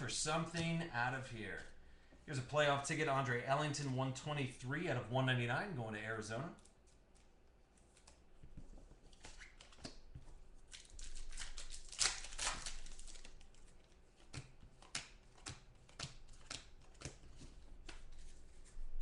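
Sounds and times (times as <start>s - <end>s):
cards flipping clicks: 9.1s - 10.0s, 14.2s - 18.2s
card pack rustling and tearing: 10.6s - 18.8s.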